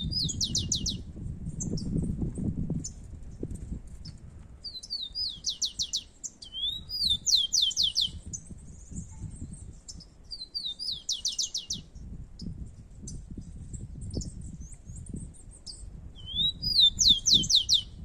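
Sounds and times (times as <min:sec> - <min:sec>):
sparrow singing whistles and trills: 0:00.0 - 0:18.0.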